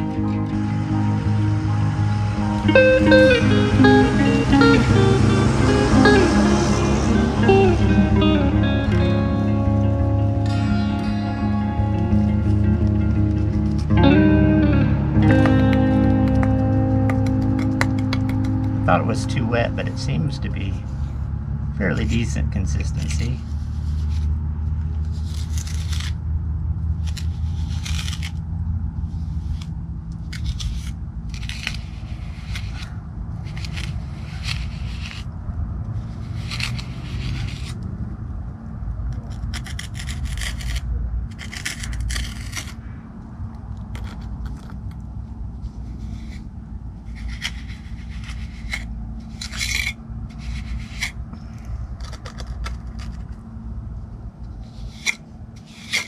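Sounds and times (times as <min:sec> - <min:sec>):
tool scraping wet cement: 0:25.1 - 0:26.2, 0:27.0 - 0:28.4, 0:30.3 - 0:35.3, 0:36.0 - 0:37.8, 0:39.2 - 0:42.8, 0:45.7 - 0:46.5, 0:47.1 - 0:51.2, 0:54.6 - 0:56.0.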